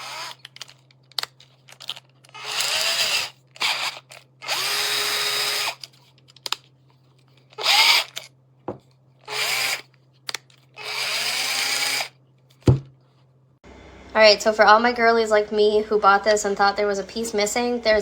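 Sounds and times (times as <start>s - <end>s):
cordless drill motor whining: 0.0s - 0.4s, 2.3s - 5.8s, 7.6s - 8.2s, 9.2s - 9.8s, 10.8s - 12.1s.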